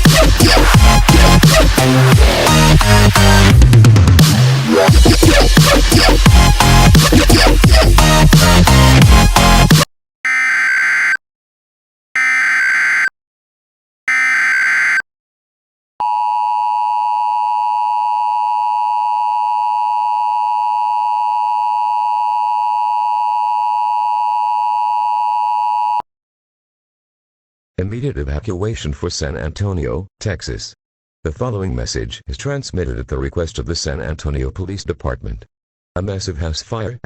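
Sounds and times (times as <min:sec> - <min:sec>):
screechy digital warble: 0:14.1 - 0:15.0.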